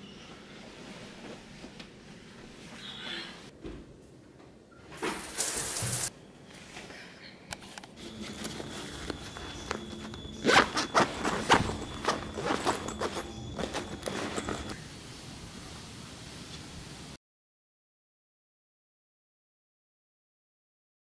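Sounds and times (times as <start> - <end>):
rustling: 5.0 - 6.1, 8.0 - 14.8
zipper-like sound: 10.3 - 14.8.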